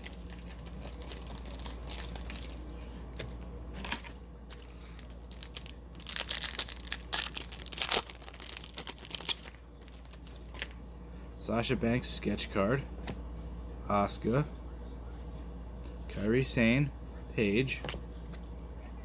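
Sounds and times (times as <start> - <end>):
wrapper crinkling and tearing: 0.0 - 10.8.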